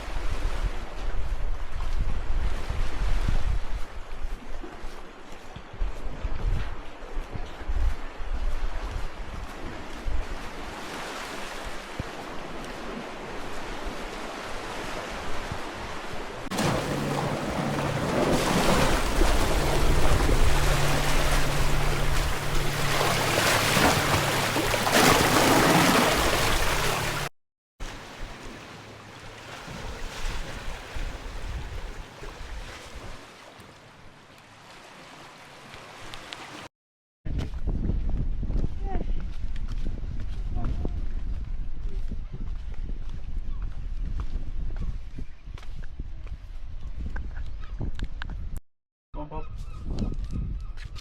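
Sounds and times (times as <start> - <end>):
wind buffeting microphone: 0.0 - 10.9, 11.6 - 27.3, 29.6 - 33.2, 37.3 - 48.6, 49.5 - 51.0
surf washing onto shore: 10.5 - 32.2
steady low hum: 16.6 - 25.0.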